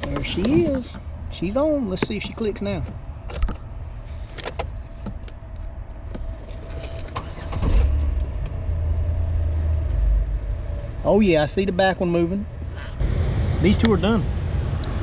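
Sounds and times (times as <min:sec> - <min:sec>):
loud low rumble: 0:07.7 - 0:15.0.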